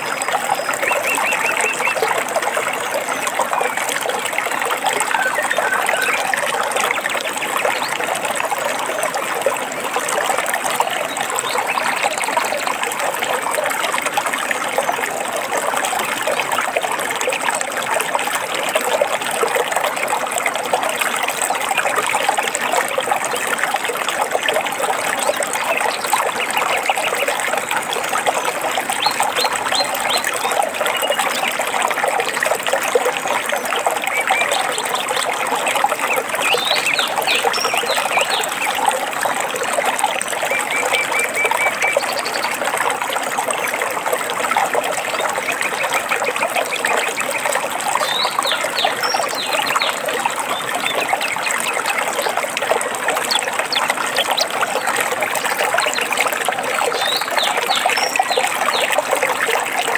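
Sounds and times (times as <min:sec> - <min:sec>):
stream trickling and burbling: 0:00.0 - 0:59.9
birds chirping: 0:05.0 - 0:06.8.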